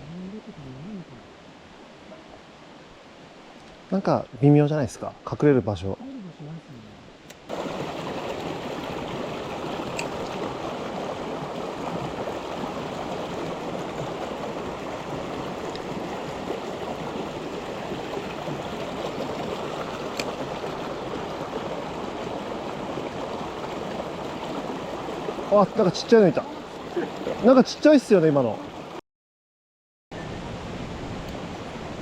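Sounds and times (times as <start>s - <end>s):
water rushing over rocks: 7.2s - 29.0s.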